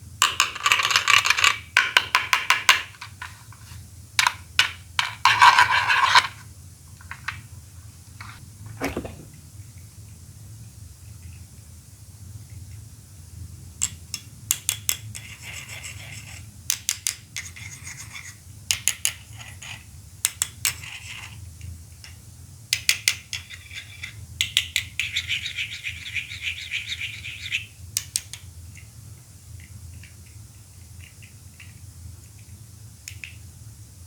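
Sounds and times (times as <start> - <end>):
light plastic rattling: 8.2 - 9.6.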